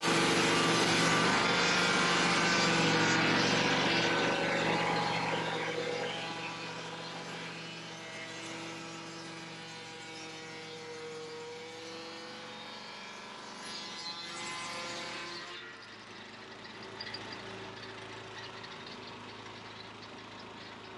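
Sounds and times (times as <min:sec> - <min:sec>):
sawmill engine and saw running: 0:00.0 - 0:20.9.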